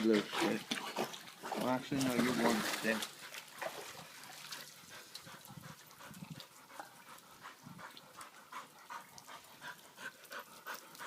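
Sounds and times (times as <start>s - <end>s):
dog panting: 4.5s - 11.0s.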